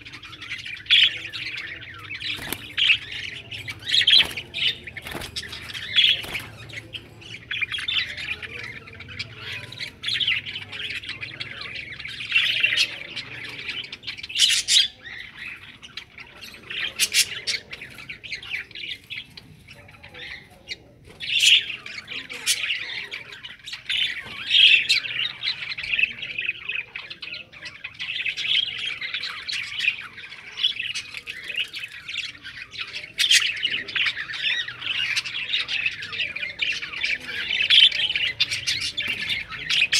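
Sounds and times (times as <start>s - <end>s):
budgerigars chattering: 0.0s - 39.9s.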